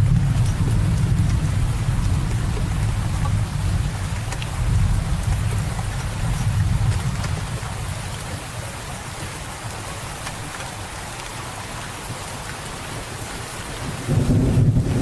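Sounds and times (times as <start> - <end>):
thunder rumble: 0.0 - 8.4, 13.8 - 15.0
rain hissing: 0.0 - 15.0.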